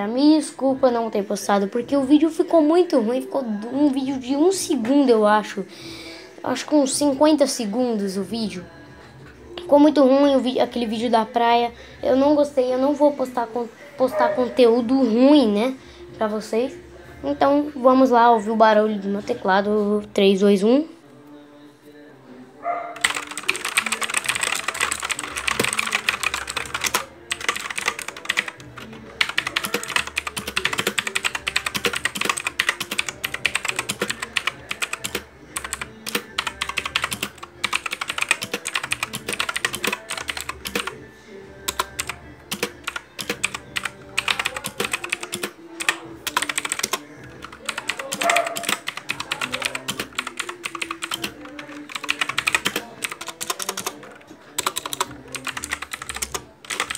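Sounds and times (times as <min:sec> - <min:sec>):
mechanical keyboard typing: 0:23.0 - 0:41.0, 0:41.7 - 0:56.9.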